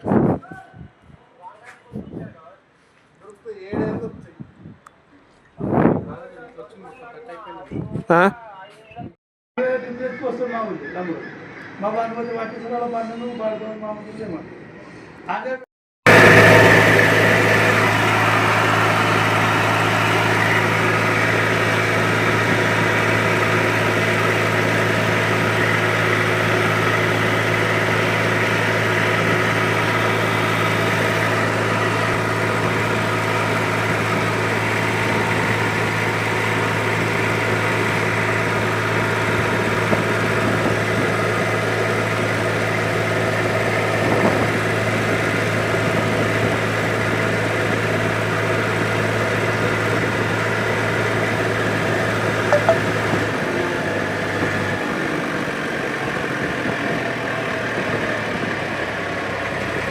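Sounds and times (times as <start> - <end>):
tractor engine idling: 16.1 - 53.3.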